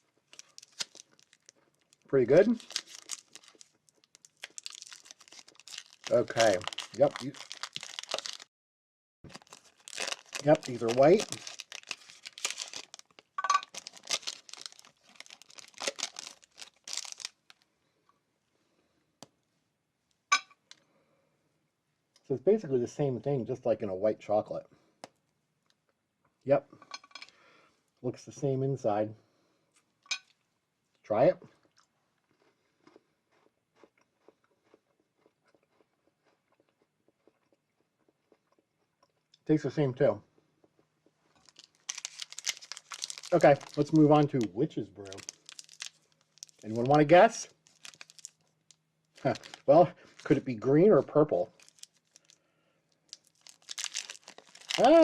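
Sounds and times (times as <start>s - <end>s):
wrapper crinkling and tearing: 0.0s - 8.5s, 9.3s - 17.6s, 41.4s - 50.4s, 51.5s - 52.4s, 53.1s - 55.0s.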